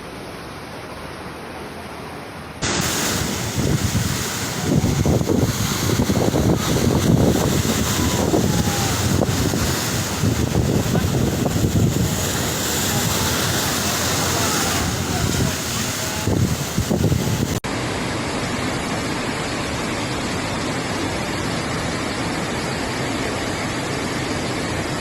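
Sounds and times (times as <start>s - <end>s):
wind buffeting microphone: 2.6s - 17.6s.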